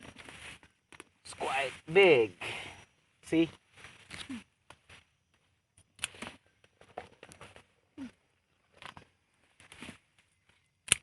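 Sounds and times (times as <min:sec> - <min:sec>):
leaves rustling and crackling: 0:00.0 - 0:02.1.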